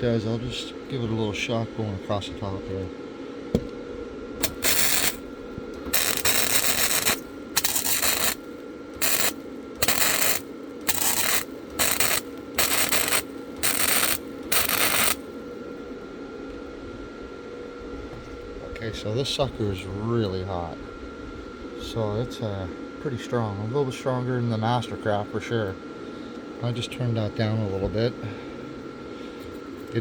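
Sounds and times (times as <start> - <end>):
cooling fan humming: 0.0 - 30.0
welding arc crackling: 4.4 - 15.4.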